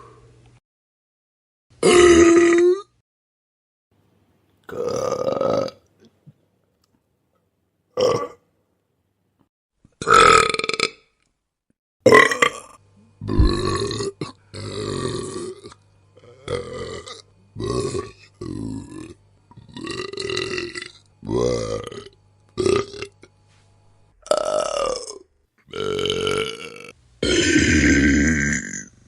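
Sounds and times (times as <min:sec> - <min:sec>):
person burping: 0:01.8 - 0:03.0, 0:04.7 - 0:05.8, 0:08.0 - 0:08.4, 0:10.0 - 0:11.1, 0:12.0 - 0:23.3, 0:24.2 - 0:29.0.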